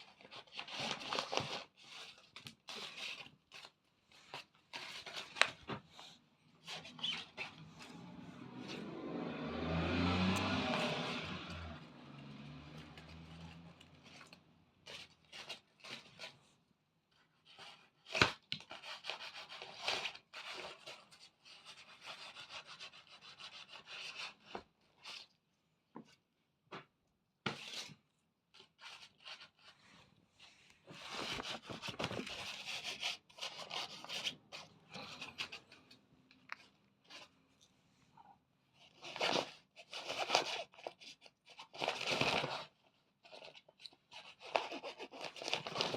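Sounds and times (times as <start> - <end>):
rustling and scraping: 0.0 - 9.1, 10.3 - 16.6, 27.5 - 38.2.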